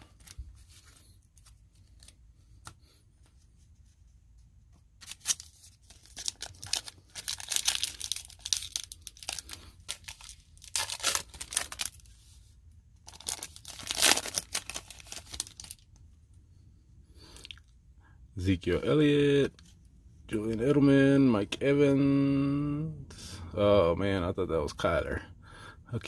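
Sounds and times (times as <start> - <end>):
foil wrapper tearing and crinkling: 5.0 - 12.1, 13.0 - 15.8.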